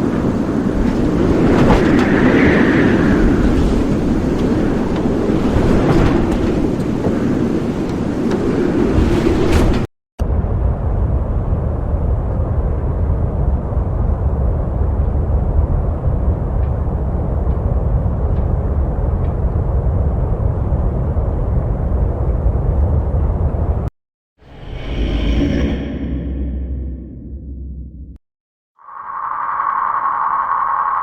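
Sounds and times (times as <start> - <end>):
deep rumbling ambience: 9.6 - 28.2.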